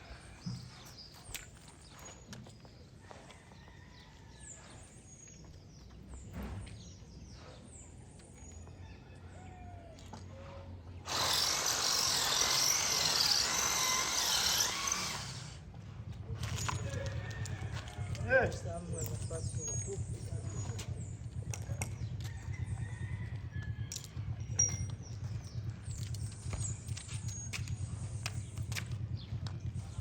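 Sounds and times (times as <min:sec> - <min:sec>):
power tool whining: 0:11.0 - 0:15.7.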